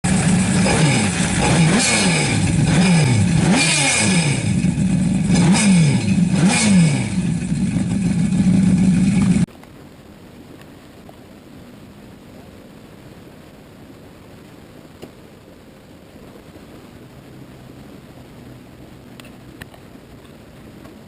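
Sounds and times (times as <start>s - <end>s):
rushing water noise: 0.0s - 21.0s
jet ski engine running hard: 0.1s - 9.5s.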